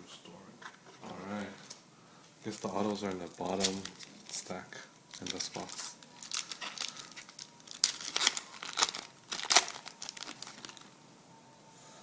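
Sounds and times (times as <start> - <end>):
wrapper crinkling and tearing: 2.5 - 11.0.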